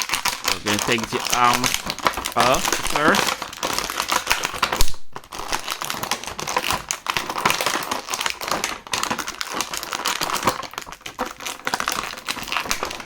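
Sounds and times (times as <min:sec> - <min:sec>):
plastic packaging crinkling: 0:00.0 - 0:13.0
small clicks and rustles: 0:00.0 - 0:13.0.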